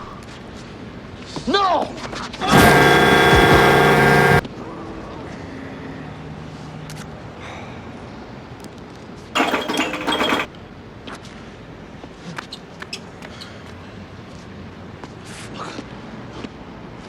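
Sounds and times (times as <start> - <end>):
loud harsh cartoon hit: 2.4 - 4.4.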